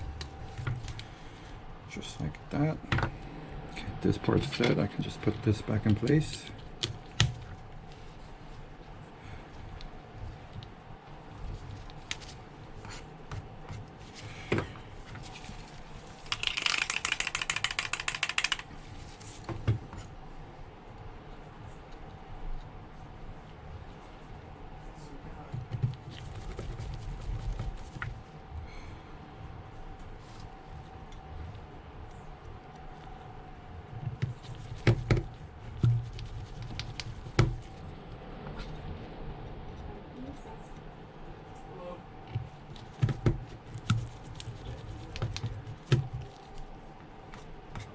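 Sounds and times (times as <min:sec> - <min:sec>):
low steady hum: 0:00.0 - 0:47.9
fast run of even clicks: 0:16.3 - 0:18.7
tools and phone parts clicking: 0:16.3 - 0:18.7.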